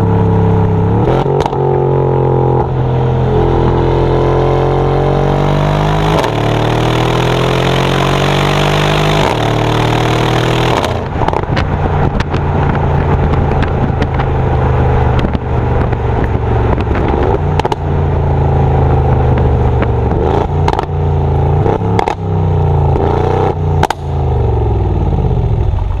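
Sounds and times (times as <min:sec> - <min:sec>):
car engine accelerating hard: 0:00.0 - 0:26.0
exhaust crackles and pops: 0:00.6 - 0:01.7, 0:09.1 - 0:24.2.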